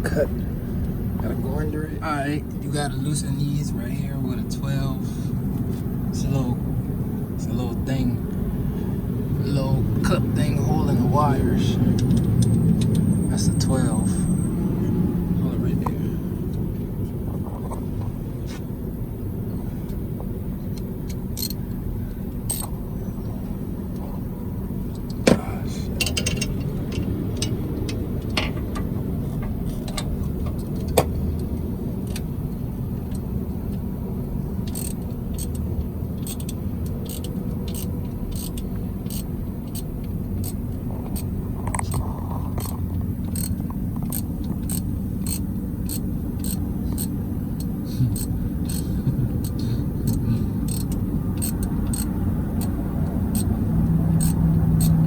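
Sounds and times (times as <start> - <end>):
low vehicle rumble: 0.0 - 55.0
wrench clicking on bolts: 20.7 - 21.6, 22.4 - 22.8, 25.9 - 28.9, 34.6 - 42.0, 42.6 - 53.5, 54.1 - 55.0.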